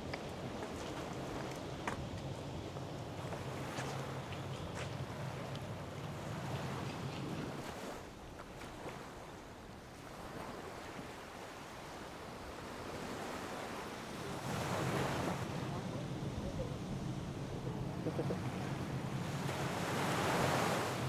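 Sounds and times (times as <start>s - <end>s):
sea waves washing in: 2.4s - 21.0s
wind buffeting microphone: 14.4s - 21.0s.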